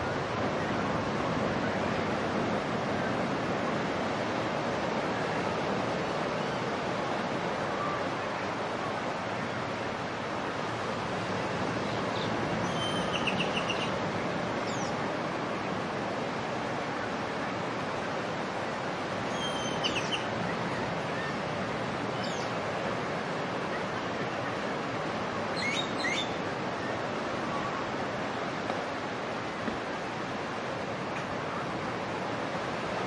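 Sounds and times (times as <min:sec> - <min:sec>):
surf washing on a beach: 0:00.0 - 0:33.0
birds calling: 0:11.8 - 0:14.0.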